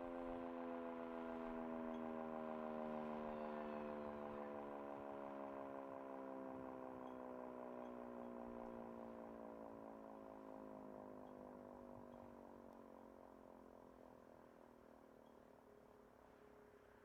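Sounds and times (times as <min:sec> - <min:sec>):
siren winding down: 0:03.1 - 0:04.6.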